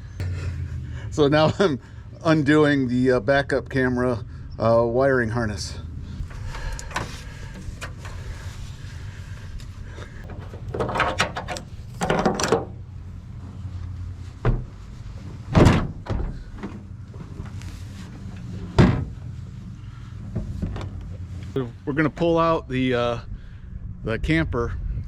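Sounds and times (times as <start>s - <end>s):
steady low hum: 0.0s - 25.0s
metal clunks and scrapes: 6.2s - 8.6s, 10.2s - 12.8s, 20.2s - 21.2s.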